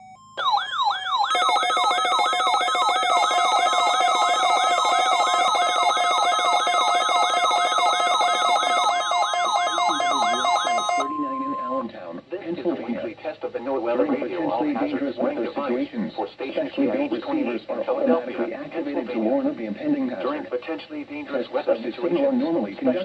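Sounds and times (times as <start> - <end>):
fast sweeping alarm tone: 0.0 - 11.9
steady high tones: 0.0 - 11.9.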